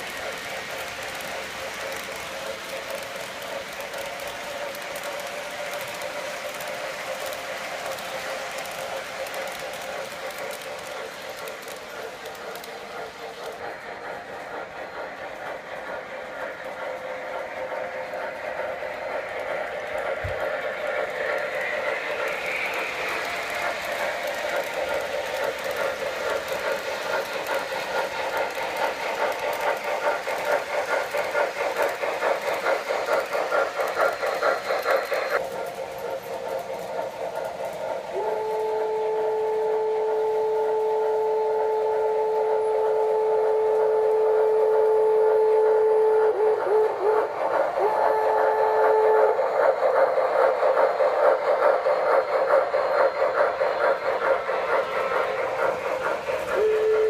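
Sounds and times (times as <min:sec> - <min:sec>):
model train wheels clattering: 0:00.0 - 0:57.0
short train toots: 0:55.5 - 0:57.0.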